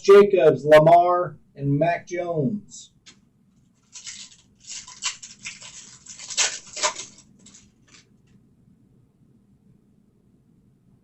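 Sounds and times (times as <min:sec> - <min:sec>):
cards handled: 0:03.1 - 0:08.1
foil wrapper crinkling and tearing: 0:03.7 - 0:08.1.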